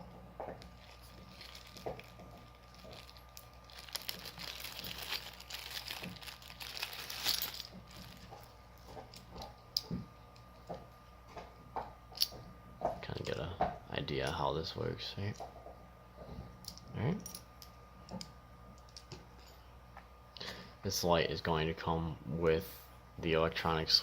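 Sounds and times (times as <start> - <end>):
plastic packaging crinkling: 0.6 - 9.2.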